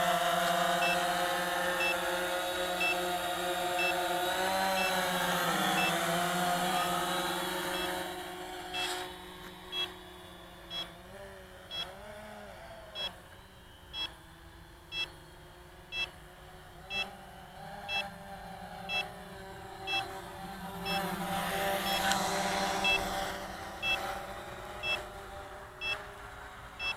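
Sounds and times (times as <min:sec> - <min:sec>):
quadcopter motors humming: 0:00.0 - 0:26.9
high electronic beep: 0:08.8 - 0:09.0.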